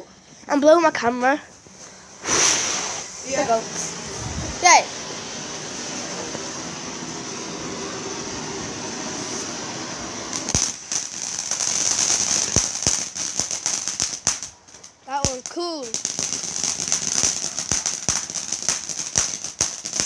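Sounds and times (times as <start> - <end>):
firework hissing: 0.1 - 20.0
firework crackling pops: 0.5 - 20.0.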